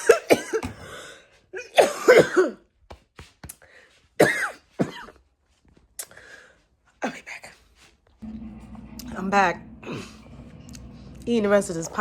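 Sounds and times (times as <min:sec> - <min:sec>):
woman coughing: 0:00.0 - 0:00.8, 0:01.6 - 0:02.7, 0:04.2 - 0:05.2.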